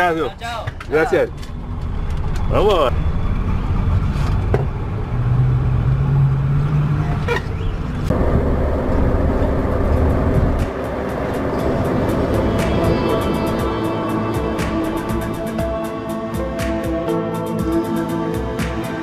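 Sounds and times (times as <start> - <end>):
road noise: 0.0 - 19.0
diesel engine droning: 1.0 - 18.3.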